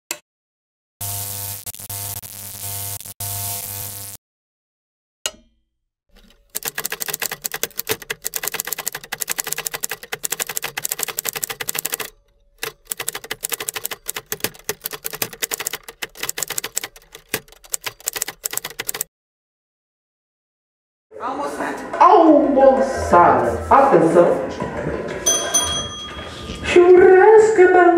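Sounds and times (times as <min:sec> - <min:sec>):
rapid dense clicking: 0:06.2 - 0:19.1.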